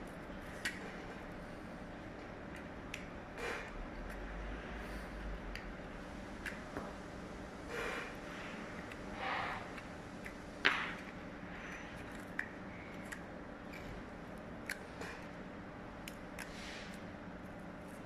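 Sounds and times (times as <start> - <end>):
clicks of hands splicing tape: 0.0 - 1.0, 5.4 - 5.8, 6.4 - 6.8, 12.0 - 15.3, 16.0 - 18.0.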